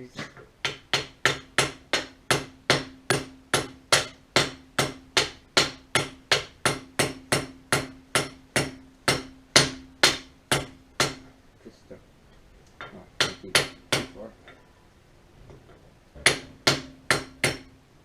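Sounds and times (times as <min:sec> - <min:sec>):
hammer on metal: 0:00.2 - 0:11.3, 0:13.2 - 0:14.6, 0:16.2 - 0:17.8.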